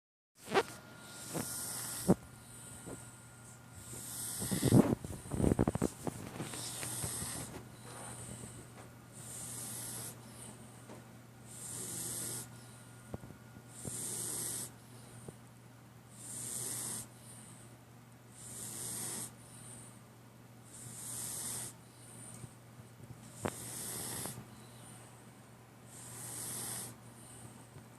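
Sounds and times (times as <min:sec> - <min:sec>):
faint steady hum: 0:00.4 - 0:27.9
cat snoring: 0:00.5 - 0:02.7, 0:03.8 - 0:05.7, 0:06.5 - 0:08.6, 0:09.2 - 0:10.2, 0:11.5 - 0:12.8, 0:13.8 - 0:14.8, 0:16.1 - 0:17.2, 0:18.3 - 0:19.8, 0:20.7 - 0:21.8, 0:23.4 - 0:24.4, 0:25.9 - 0:27.0.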